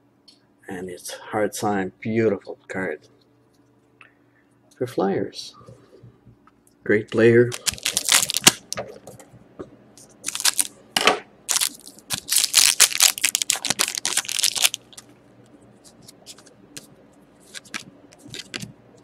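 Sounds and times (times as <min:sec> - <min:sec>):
plastic packaging crinkling and tearing: 0:07.5 - 0:08.8, 0:10.2 - 0:10.7, 0:11.5 - 0:15.0, 0:17.5 - 0:18.7.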